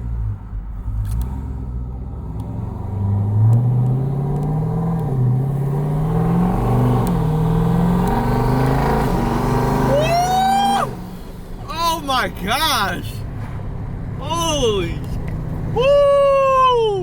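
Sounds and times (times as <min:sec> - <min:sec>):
car engine accelerating hard: 0:00.0 - 0:12.4.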